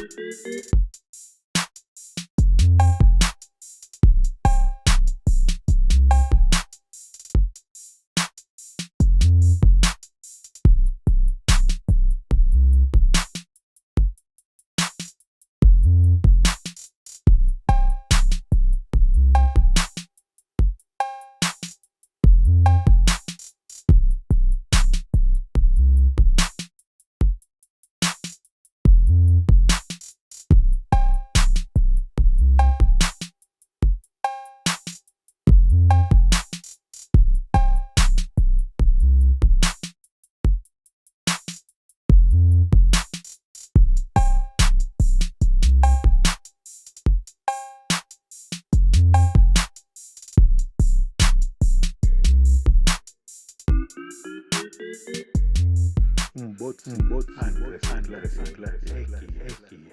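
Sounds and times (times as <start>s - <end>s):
repeated tonal phrase: 0.0s - 0.8s, 53.7s - 55.5s, 56.4s - 59.9s
hip-hop drum machine beat: 0.0s - 14.2s, 14.8s - 40.7s, 41.3s - 59.9s.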